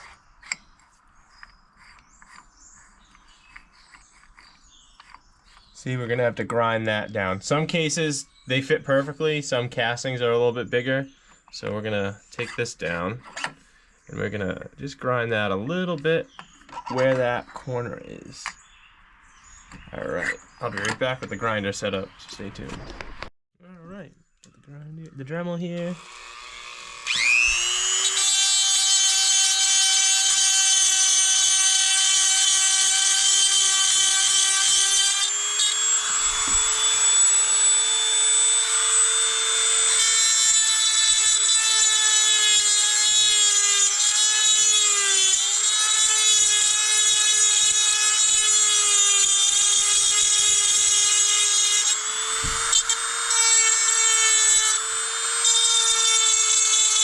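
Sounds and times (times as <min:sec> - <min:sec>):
rotary tool grinding metal: 0:00.0 - 0:05.9, 0:25.8 - 0:57.0.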